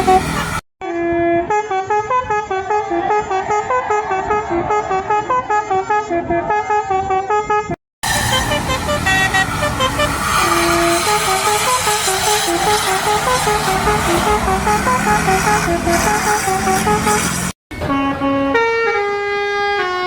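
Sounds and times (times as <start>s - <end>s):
engine noise: 0.0s - 0.6s, 8.0s - 17.6s
multi-tone bus horn tune: 0.0s - 20.0s
street noise: 0.0s - 20.0s.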